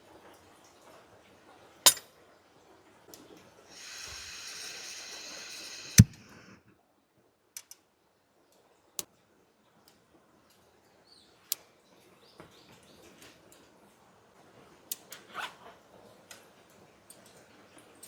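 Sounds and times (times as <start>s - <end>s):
steady hiss: 3.7s - 6.7s.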